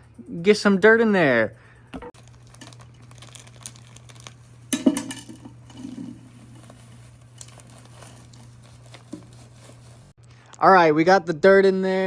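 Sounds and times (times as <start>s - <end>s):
hands rustling and clicking: 6.6s - 10.1s.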